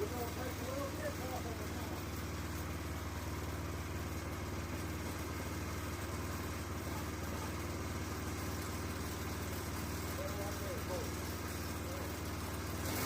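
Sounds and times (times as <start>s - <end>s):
sawmill engine running: 0.0s - 13.0s.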